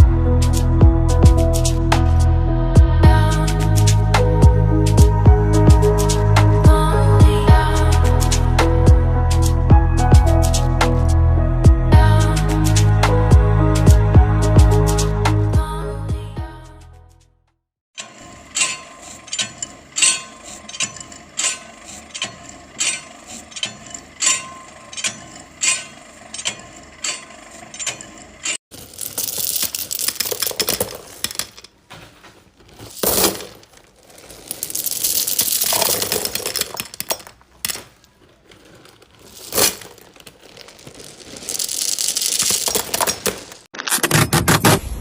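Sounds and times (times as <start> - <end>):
scraping and crunching: 18.0 - 44.9.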